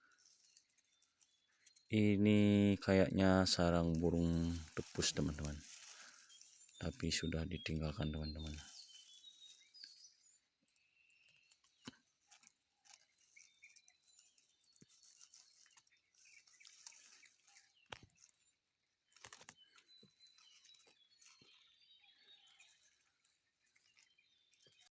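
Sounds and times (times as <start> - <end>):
faint rustling: 0.0 - 10.4.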